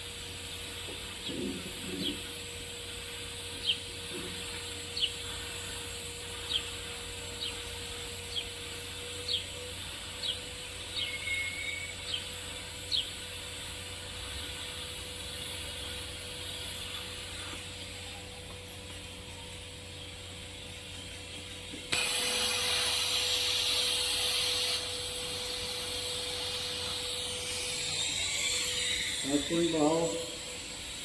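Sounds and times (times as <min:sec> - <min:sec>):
steady hiss: 0:00.0 - 0:31.0
bird chirping: 0:10.2 - 0:12.3.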